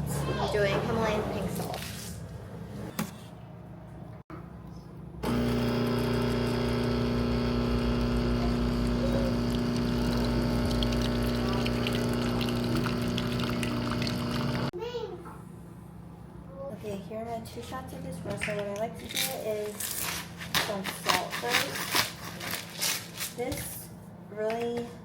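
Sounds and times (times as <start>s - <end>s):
espresso machine pump humming: 5.2s - 14.7s.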